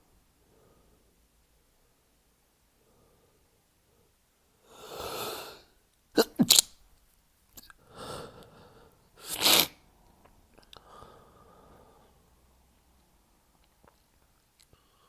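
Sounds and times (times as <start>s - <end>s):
drawn-in breath: 4.6s - 5.7s
man sneezing stifled: 6.2s - 6.6s, 9.2s - 9.8s.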